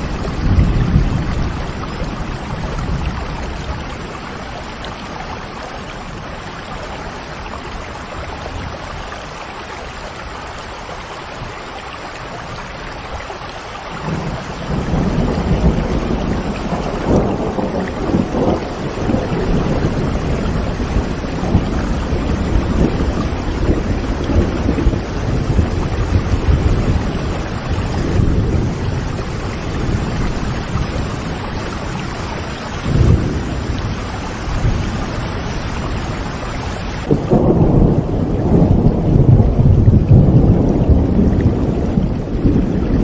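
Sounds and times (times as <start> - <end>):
rolling thunder: 0.0 - 4.9, 13.9 - 43.0
steady rain: 0.0 - 43.0.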